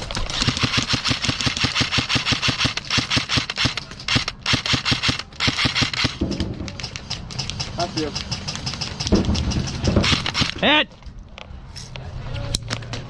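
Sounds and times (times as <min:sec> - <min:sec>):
airsoft gun firing full-auto: 0:00.3 - 0:06.2, 0:09.8 - 0:10.6.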